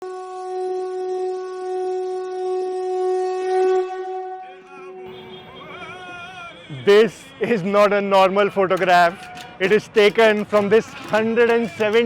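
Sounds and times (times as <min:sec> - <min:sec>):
wind instrument playing: 0:00.0 - 0:07.5.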